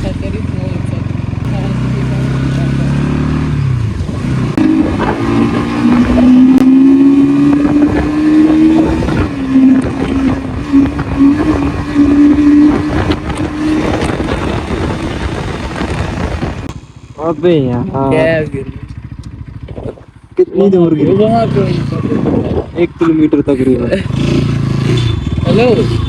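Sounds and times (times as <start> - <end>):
motorcycle engine running: 0.0 - 26.0
wind on microphone: 3.6 - 16.8, 21.6 - 22.8.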